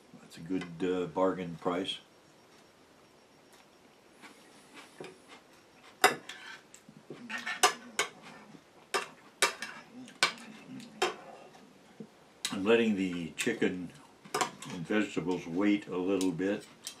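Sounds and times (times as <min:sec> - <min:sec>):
dishes and utensils clinking: 0:06.0 - 0:06.6.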